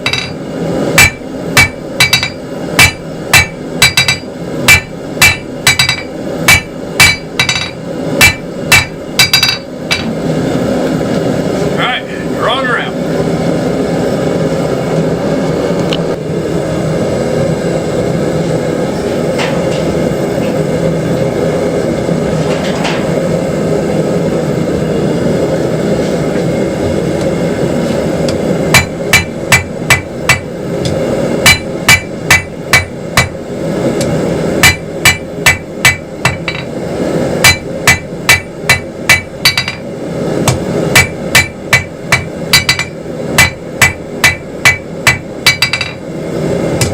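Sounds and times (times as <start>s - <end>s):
hammer ringing on anvil: 0.0s - 0.4s, 1.0s - 10.1s, 28.7s - 30.5s, 31.4s - 33.4s, 34.6s - 36.7s, 37.4s - 39.9s, 40.9s - 46.0s.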